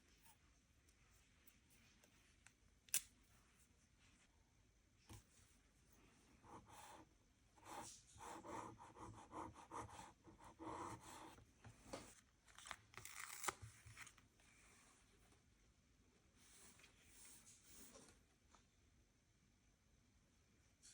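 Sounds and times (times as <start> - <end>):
paper rustling and tearing: 12.5 - 14.2.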